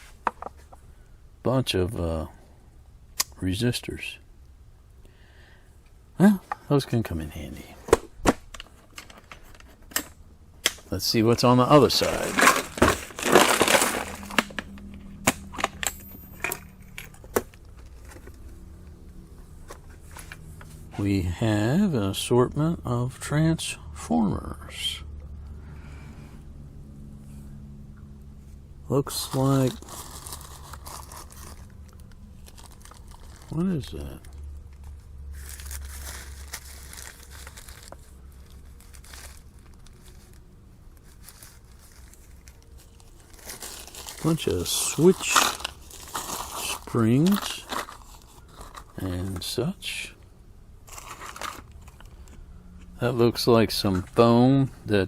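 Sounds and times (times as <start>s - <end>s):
steady low hum: 0.0s - 55.0s
plastic bags crinkling: 11.0s - 15.8s, 29.1s - 49.6s, 50.8s - 52.4s.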